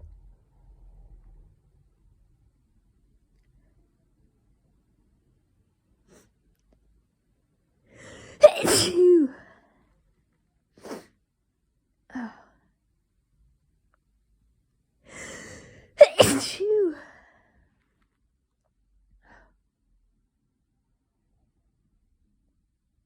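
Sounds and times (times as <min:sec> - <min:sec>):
sharp in-breath: 0:07.9 - 0:08.7, 0:15.1 - 0:15.9
person sneezing: 0:08.1 - 0:09.5, 0:10.8 - 0:11.1, 0:15.2 - 0:17.1.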